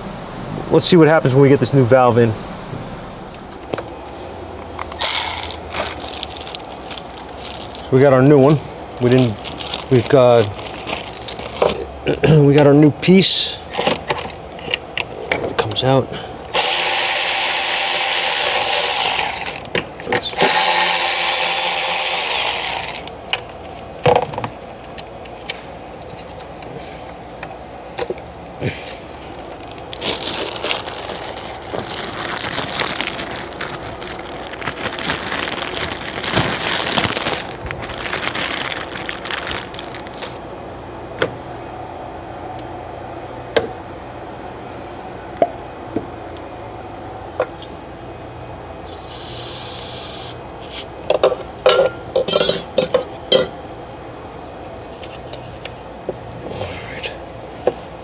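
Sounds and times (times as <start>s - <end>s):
parts rustling: 2.6s - 8.0s, 20.4s - 23.1s, 29.1s - 40.4s.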